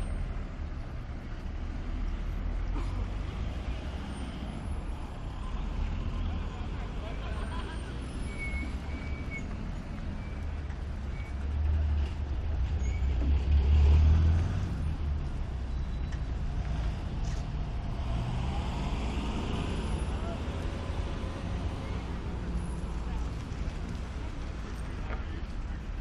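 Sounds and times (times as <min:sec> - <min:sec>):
motor vehicle passing: 0:13.3 - 0:15.4, 0:16.5 - 0:24.8.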